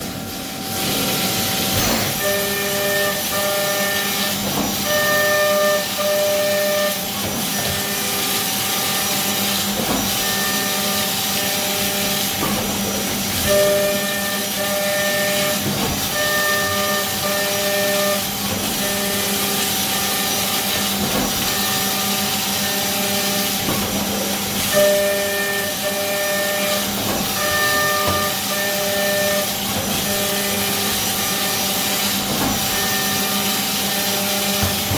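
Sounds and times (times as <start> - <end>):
mill spindle humming: 0.0 - 34.9
high-pitched cutting tones: 24.8 - 29.5.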